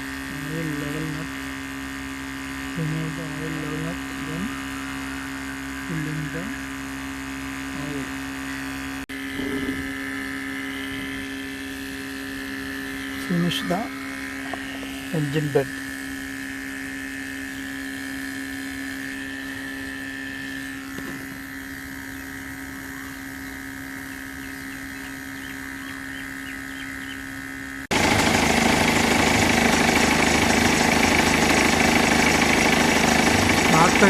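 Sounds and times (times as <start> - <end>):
steady mechanical hum: 0.0 - 34.0
rough engine idling: 27.9 - 34.0.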